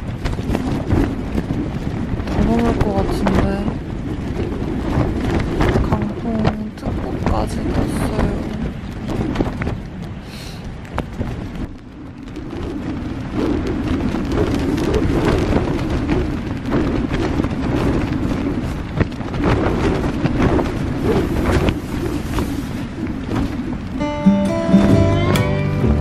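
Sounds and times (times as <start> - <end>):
low rumbling noise: 0.0 - 26.0
wind buffeting microphone: 0.0 - 26.0.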